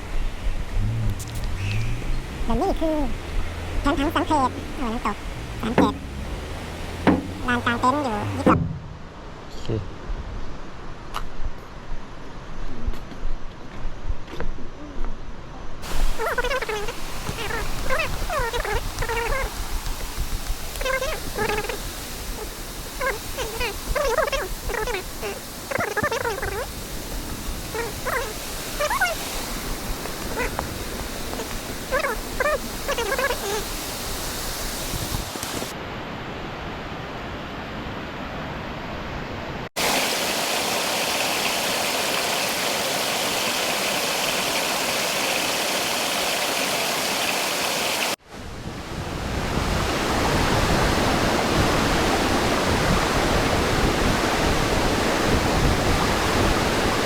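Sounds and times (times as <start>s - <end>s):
waterfall rushing: 0.0s - 9.4s, 15.8s - 35.8s, 39.8s - 57.0s
frogs calling: 1.2s - 8.6s, 15.8s - 19.9s, 20.6s - 27.0s, 27.6s - 33.8s.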